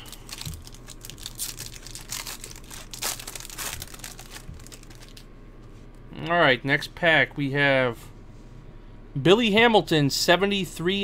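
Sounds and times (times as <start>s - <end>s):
card pack wrapper crinkling and tearing: 0.0s - 5.3s.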